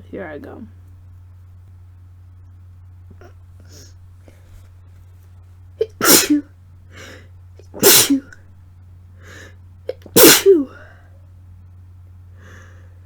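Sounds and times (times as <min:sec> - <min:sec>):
woman sneezing: 0:05.8 - 0:06.5, 0:07.8 - 0:08.3, 0:09.9 - 0:10.9.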